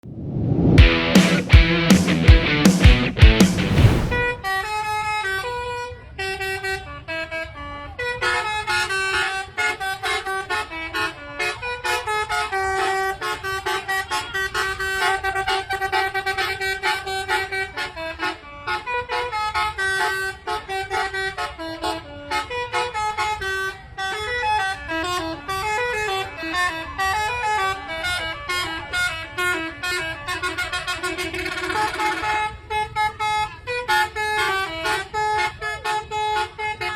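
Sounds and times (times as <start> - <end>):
loud burst of music: 0.8 - 5.0
musical bus horn: 4.2 - 36.9.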